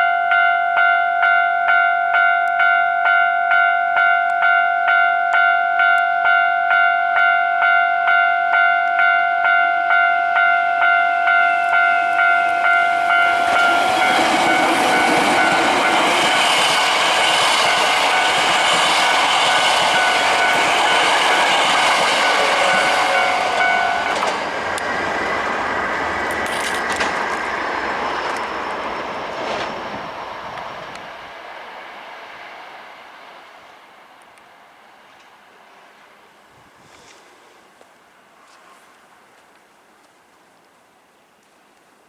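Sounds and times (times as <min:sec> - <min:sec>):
level-crossing bell ringing: 0:00.0 - 0:24.3
train wheels rushing on rail: 0:10.3 - 0:36.2.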